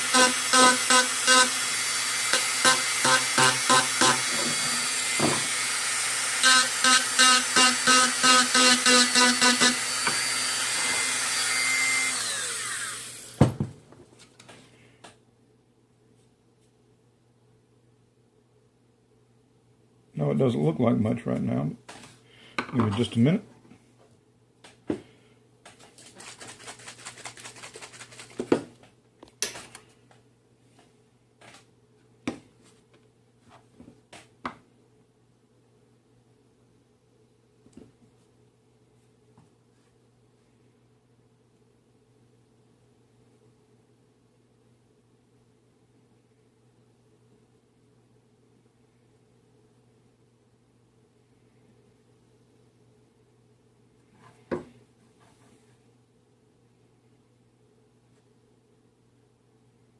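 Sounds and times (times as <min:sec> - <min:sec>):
power tool motor whining: 0:00.0 - 0:13.4
faint steady hum: 0:00.0 - 0:59.9
tool set down knock: 0:05.2 - 0:05.5, 0:13.4 - 0:13.8.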